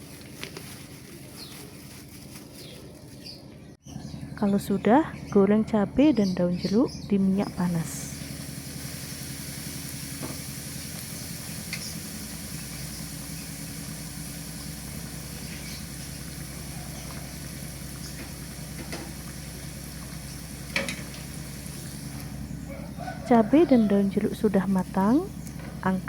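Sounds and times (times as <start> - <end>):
chillies sizzling in hot oil: 7.4 - 22.5.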